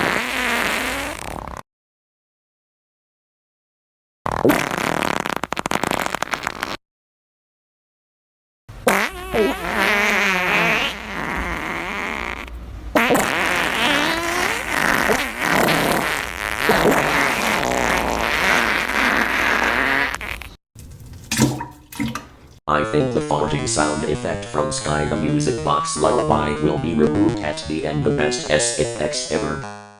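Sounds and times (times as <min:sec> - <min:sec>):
farting noises with bending pitch: 0:00.0 - 0:01.6, 0:04.3 - 0:06.8, 0:08.8 - 0:22.6.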